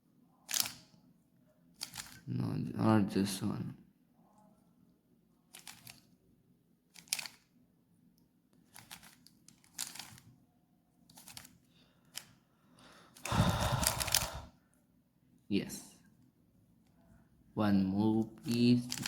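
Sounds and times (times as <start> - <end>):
puzzle cube plastic rattling: 0.5 - 0.9, 1.8 - 2.3, 5.5 - 6.1, 6.9 - 7.5, 8.6 - 10.3, 11.1 - 12.3, 13.2 - 14.5, 18.3 - 19.0.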